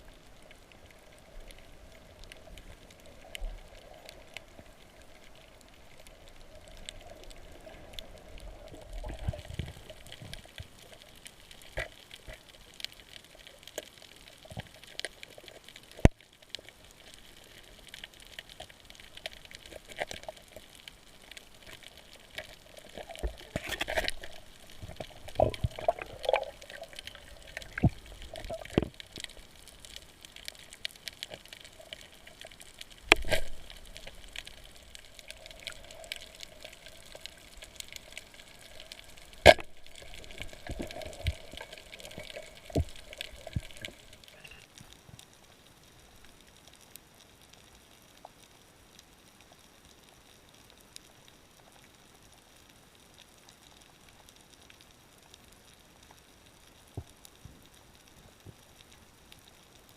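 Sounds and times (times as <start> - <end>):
splashing and bubbling: 0.0 - 44.7
water sloshing and trickling: 21.6 - 29.8.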